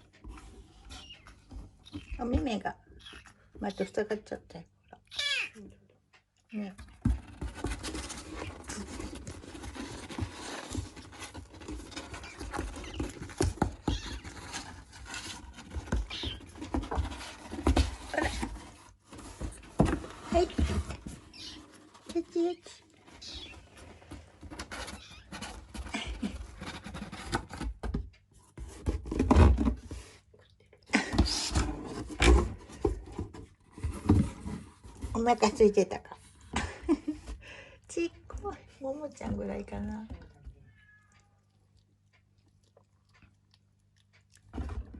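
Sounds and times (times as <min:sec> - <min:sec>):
close rustling: 0:07.0 - 0:27.8.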